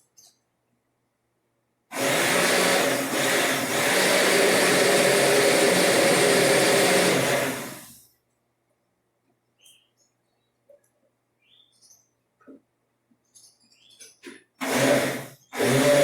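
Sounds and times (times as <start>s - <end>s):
blender running: 1.9s - 8.0s, 14.6s - 16.0s.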